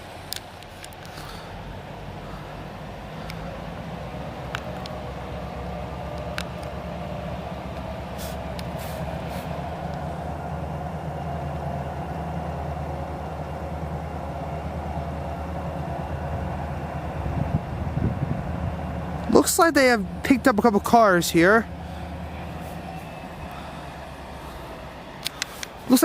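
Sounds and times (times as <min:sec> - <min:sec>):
diesel locomotive engine drone: 0:00.0 - 0:26.0
air hissing: 0:08.1 - 0:10.2.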